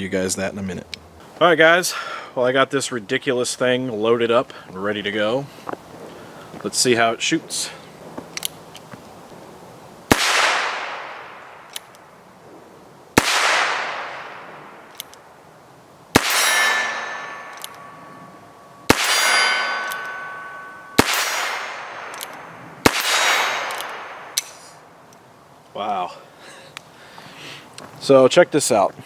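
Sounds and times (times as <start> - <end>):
revolver shots with ringing: 10.1 - 12.1, 13.2 - 15.4, 16.1 - 25.0
revolver hammer cocking click: 17.4 - 17.9, 21.0 - 22.4.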